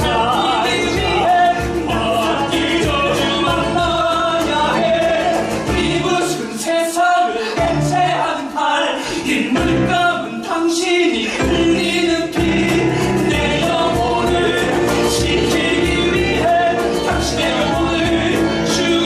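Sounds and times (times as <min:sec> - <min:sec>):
instrumental accompaniment: 0:00.0 - 0:06.5, 0:11.3 - 0:19.0
voices singing together: 0:00.0 - 0:19.0.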